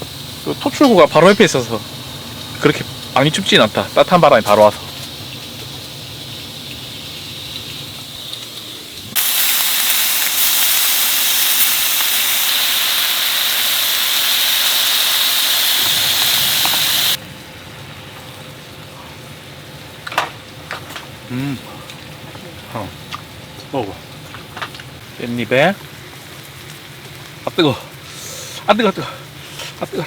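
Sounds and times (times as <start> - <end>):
loud steady hiss: 0.0 - 20.0, 27.4 - 30.0.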